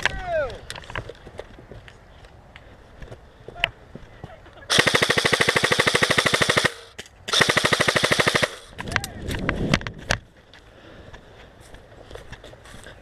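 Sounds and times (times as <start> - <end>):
airsoft gun full-auto bursts: 4.7 - 8.8.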